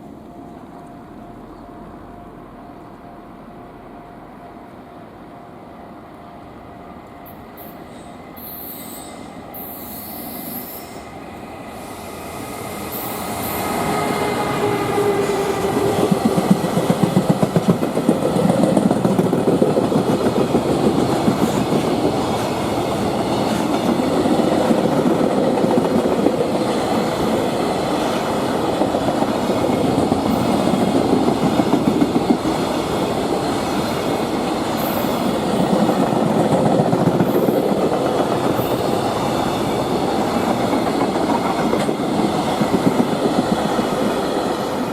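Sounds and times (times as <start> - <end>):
freight train passing: 0.0 - 44.9.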